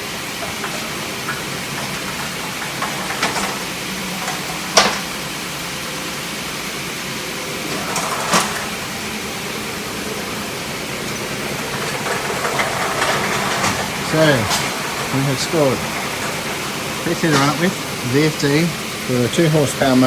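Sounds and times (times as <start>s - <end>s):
steady hissing noise: 0.0s - 20.0s
knocks and clatters: 0.3s - 5.4s, 7.5s - 18.1s.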